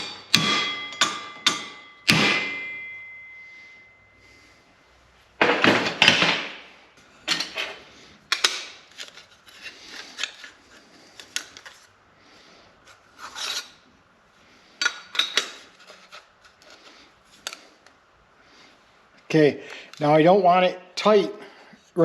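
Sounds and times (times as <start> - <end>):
metal scraping on metal: 13.2 - 13.8.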